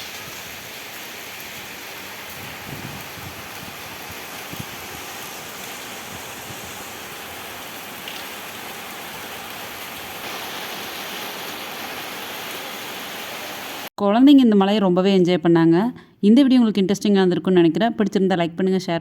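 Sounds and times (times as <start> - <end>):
rain and hail on a roof: 0.0 - 13.9.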